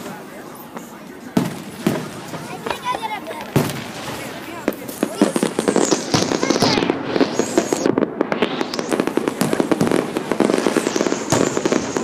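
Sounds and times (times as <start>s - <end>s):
fireworks popping and banging: 0.0s - 12.0s.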